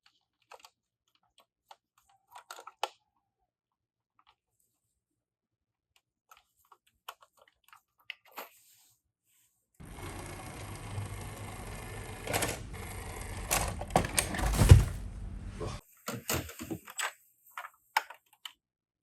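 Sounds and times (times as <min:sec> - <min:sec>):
whirring rattle: 0:09.8 - 0:15.8.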